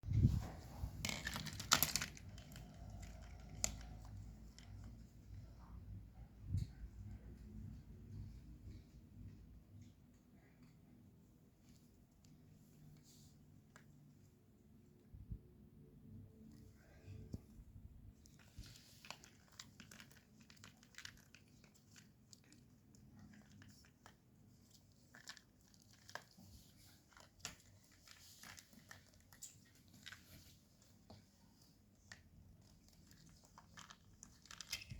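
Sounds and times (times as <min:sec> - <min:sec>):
crinkling and rustling: 0:00.1 - 0:05.9, 0:16.5 - 0:34.9.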